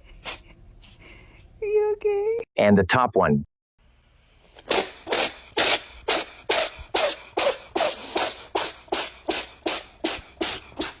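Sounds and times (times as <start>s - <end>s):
cat sneezing: 4.6s - 11.0s.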